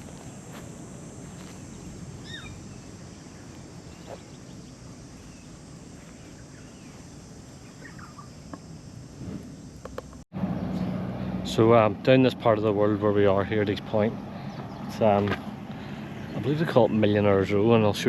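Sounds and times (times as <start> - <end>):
parrots calling: 2.2 - 2.8, 7.7 - 8.3.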